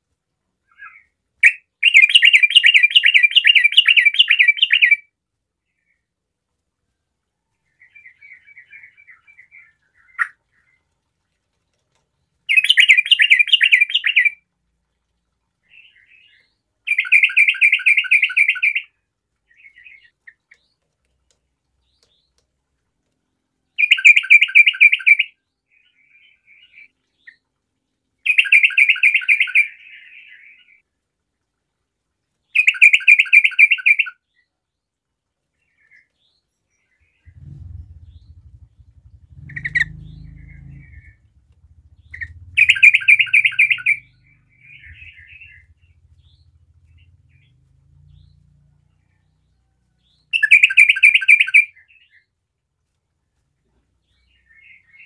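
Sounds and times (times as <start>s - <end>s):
bird song phrases: 0.6s - 6.2s, 7.3s - 11.0s, 11.7s - 14.4s, 15.6s - 22.5s, 23.3s - 30.9s, 32.4s - 52.4s, 53.5s - 55.0s
bird chatter: 36.9s - 48.4s.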